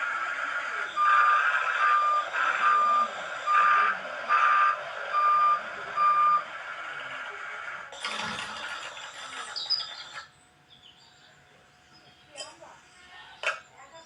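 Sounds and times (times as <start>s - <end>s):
vehicle reversing alarm beeping: 0.0s - 7.0s.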